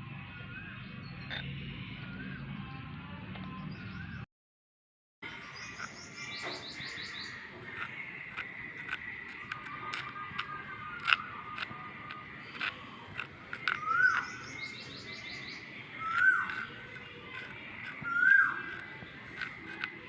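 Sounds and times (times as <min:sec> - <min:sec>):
small clicks: 0:05.8 - 0:20.0
bird whistling call: 0:13.6 - 0:17.0, 0:18.0 - 0:19.4.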